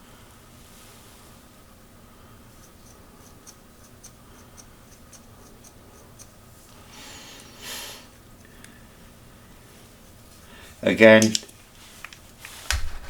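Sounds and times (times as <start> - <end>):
small scissors snipping: 2.6 - 6.3
brief rustle: 11.2 - 13.0.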